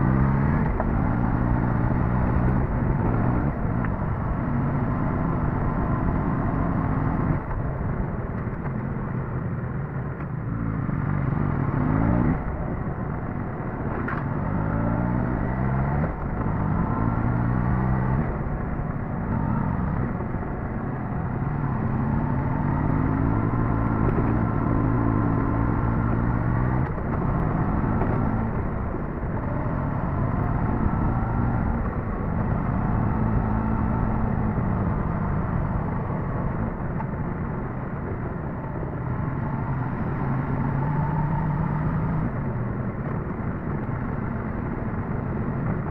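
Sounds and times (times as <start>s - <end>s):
motorcycle engine revving: 13.8s - 36.9s.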